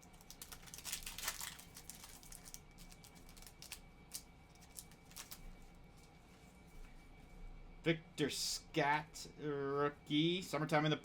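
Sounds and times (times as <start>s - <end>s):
wrapper crinkling and tearing: 0.0s - 5.4s.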